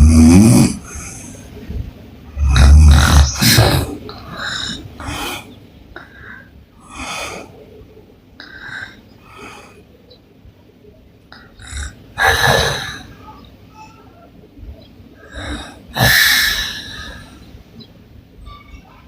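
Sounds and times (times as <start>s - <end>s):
woman snoring: 0.0s - 1.2s, 2.4s - 5.2s, 15.3s - 17.2s.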